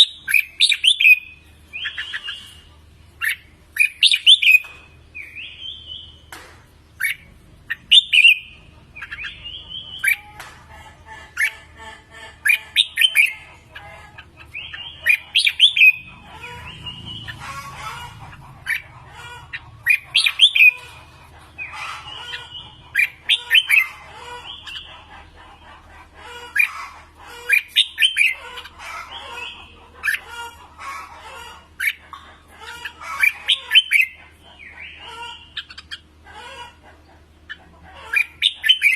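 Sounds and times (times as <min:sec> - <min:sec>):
birds singing whistled notes: 0:00.0 - 0:06.3, 0:07.0 - 0:10.3, 0:14.4 - 0:17.4, 0:19.9 - 0:21.0, 0:38.2 - 0:38.9.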